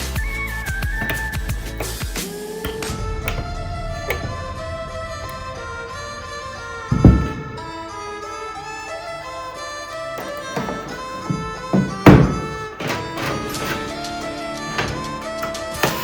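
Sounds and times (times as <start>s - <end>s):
sustained instrumental melody: 0.7s - 16.0s
drum hits: 0.8s - 8.0s.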